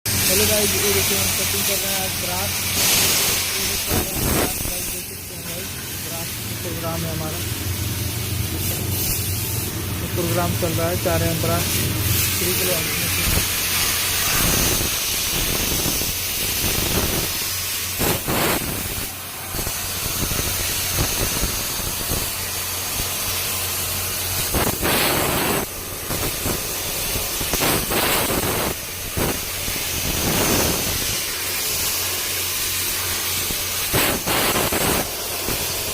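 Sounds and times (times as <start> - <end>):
low machine hum: 0.1 - 15.2
hiss of gas jet: 0.1 - 35.9.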